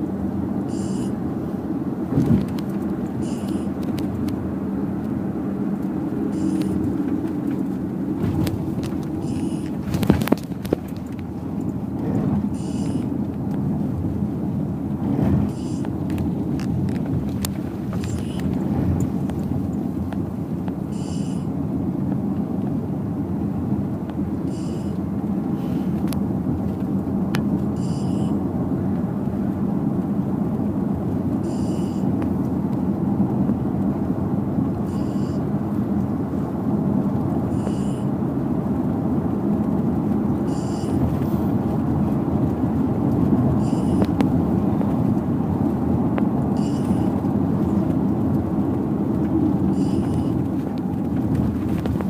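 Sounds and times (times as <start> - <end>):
car cabin rumble: 0.0 - 52.0.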